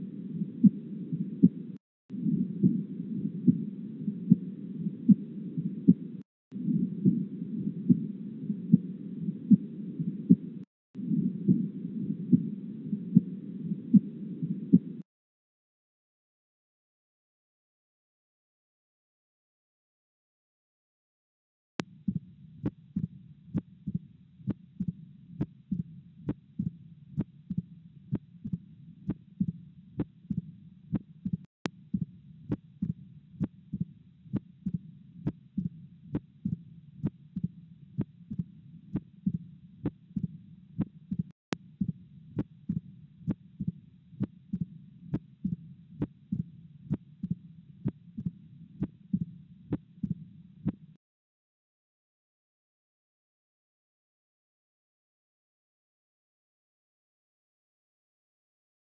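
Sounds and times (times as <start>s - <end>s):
heartbeats through a stethoscope: 0.0s - 15.0s, 21.8s - 51.0s
steady low rumble: 0.0s - 15.0s.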